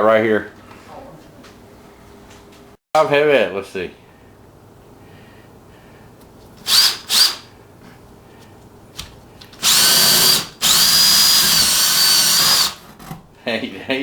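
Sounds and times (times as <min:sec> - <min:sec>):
electric drill motor whining: 0:06.6 - 0:07.4, 0:09.6 - 0:12.8.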